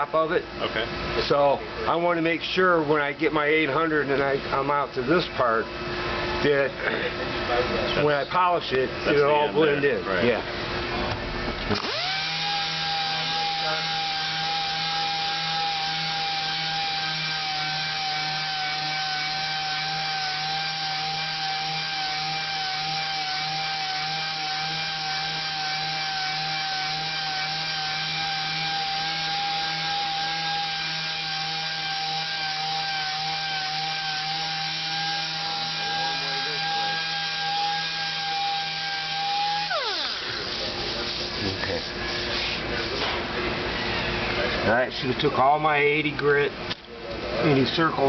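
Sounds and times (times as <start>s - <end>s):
orbital sander whining: 11.7s - 42.7s.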